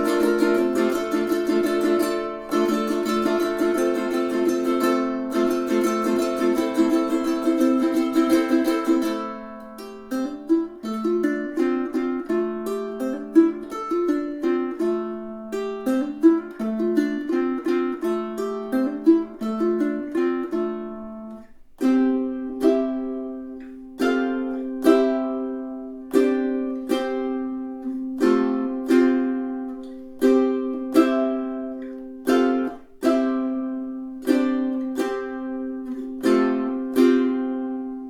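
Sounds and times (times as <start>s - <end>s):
ukulele picking and strumming: 0.0s - 38.0s.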